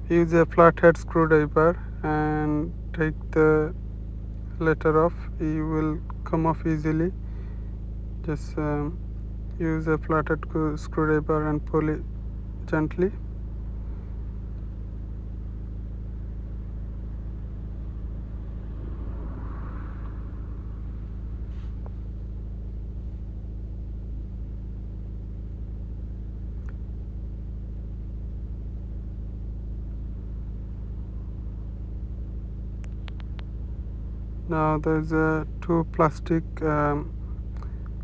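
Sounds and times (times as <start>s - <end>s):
steady low hum: 0.0s - 38.0s
faint light clicks: 32.8s - 33.5s.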